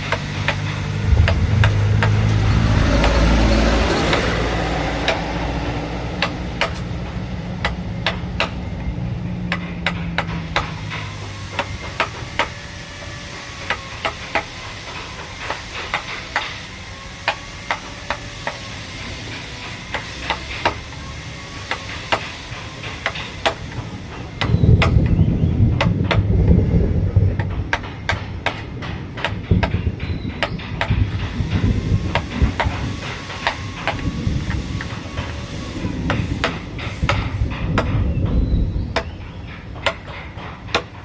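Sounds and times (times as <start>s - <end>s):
low rumbling noise: 0.0s - 41.0s
hammer tapping on wood carving: 6.2s - 6.9s, 7.6s - 8.6s, 9.5s - 12.6s, 17.3s - 18.7s, 19.5s - 20.9s, 21.6s - 23.8s, 27.4s - 35.0s.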